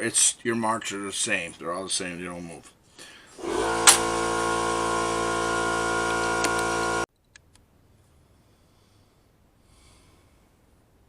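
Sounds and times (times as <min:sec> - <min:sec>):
small motor whining: 0:03.4 - 0:07.1.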